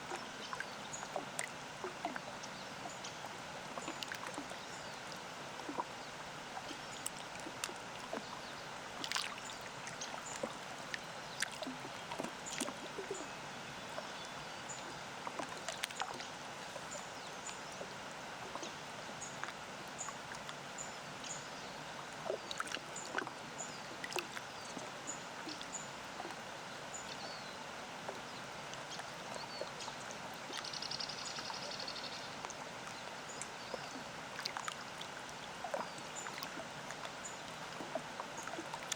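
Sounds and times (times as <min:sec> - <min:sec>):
wavelets lapping on shore: 0:00.0 - 0:13.3, 0:22.0 - 0:26.4, 0:27.0 - 0:38.9.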